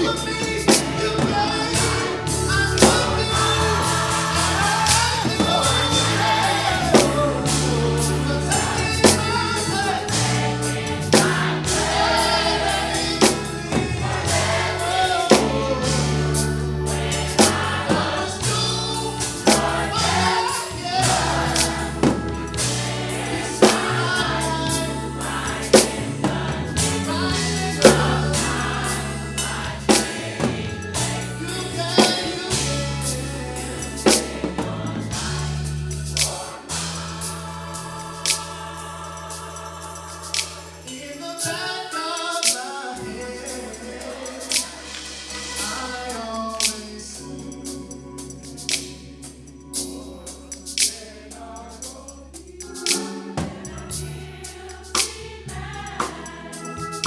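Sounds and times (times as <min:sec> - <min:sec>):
bass line: 0:00.0 - 0:40.8
drum kit: 0:00.0 - 0:41.6, 0:42.2 - 0:50.0, 0:51.8 - 0:57.0
gospel choir singing: 0:00.0 - 0:57.0.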